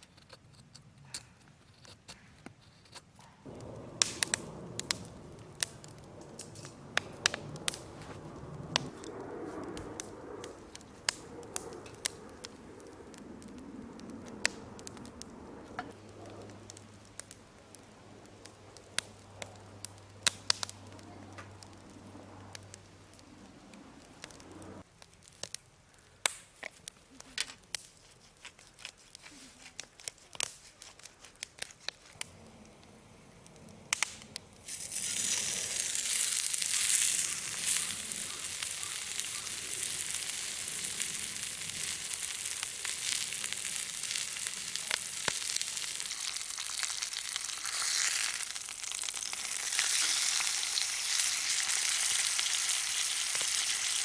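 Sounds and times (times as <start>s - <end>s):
campfire clicks and crackles: 0.0s - 54.0s
food sizzling on hot surface: 34.6s - 54.0s.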